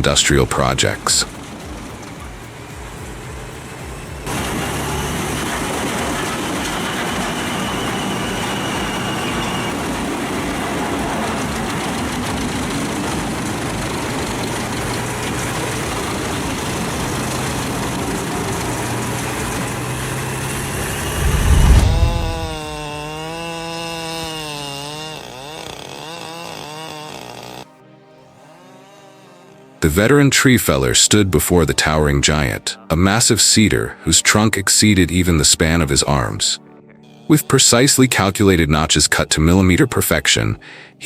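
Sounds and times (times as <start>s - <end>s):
heavy diesel machinery running: 0.0s - 24.4s
loud low thump: 20.9s - 23.2s.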